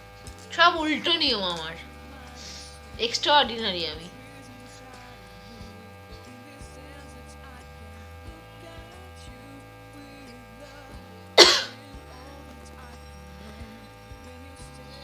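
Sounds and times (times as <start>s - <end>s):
steady electrical hum: 0.0s - 15.0s
loud sharp sneeze: 11.4s - 11.8s.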